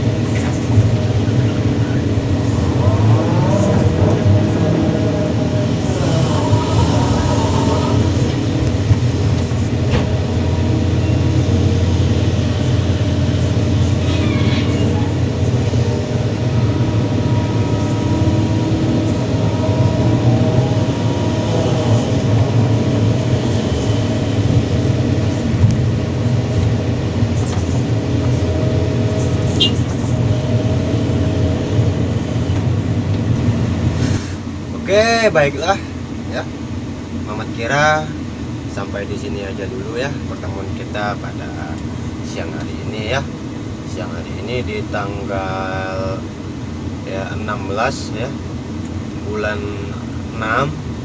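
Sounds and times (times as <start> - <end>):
hydraulic whine: 0.0 - 25.8
excavator diesel engine running: 0.0 - 51.0.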